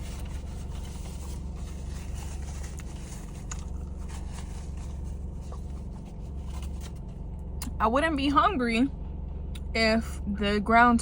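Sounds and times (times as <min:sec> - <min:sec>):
faint clicks and rustles: 0:00.0 - 0:07.2
low hum inside car: 0:00.0 - 0:11.0.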